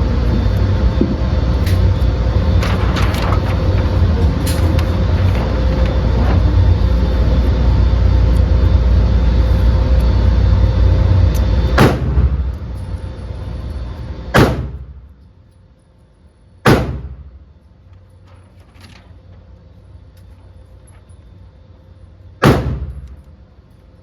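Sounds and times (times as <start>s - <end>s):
low mechanical rumble: 0.0s - 24.0s
sharp bang: 14.4s - 14.9s, 16.7s - 17.2s.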